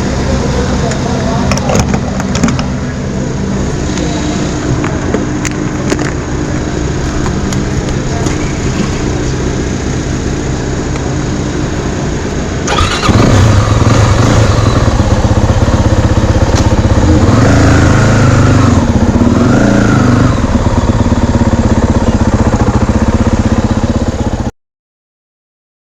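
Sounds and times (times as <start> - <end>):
dirt bike engine idling: 2.0 - 24.5
engine revving: 12.6 - 22.8.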